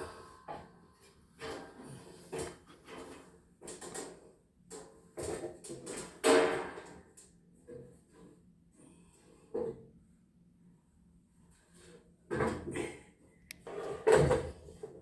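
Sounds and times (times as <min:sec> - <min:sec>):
objects scraping and knocking: 0:01.0 - 0:07.0, 0:13.6 - 0:15.0.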